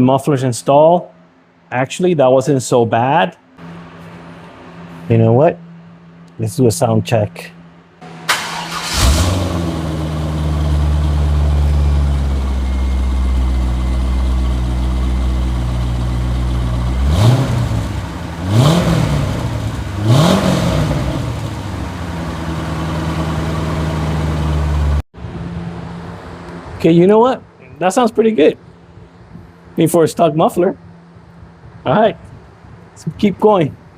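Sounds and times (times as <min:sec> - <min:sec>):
car engine starting and idling: 0:08.0 - 0:26.7.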